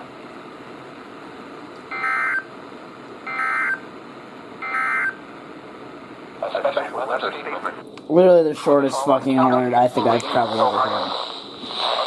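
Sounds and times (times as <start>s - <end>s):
harsh warbling data squawks: 1.9s - 2.5s, 3.3s - 3.8s, 4.6s - 5.2s.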